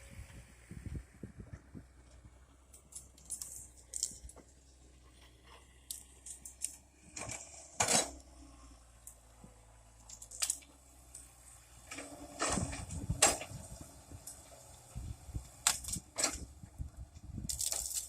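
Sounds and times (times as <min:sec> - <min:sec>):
excavator engine hum: 0:00.0 - 0:18.0.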